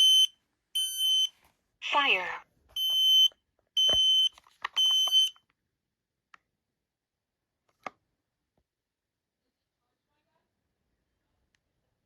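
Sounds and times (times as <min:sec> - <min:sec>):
smoke alarm beeping: 0:00.0 - 0:01.4, 0:02.8 - 0:05.4.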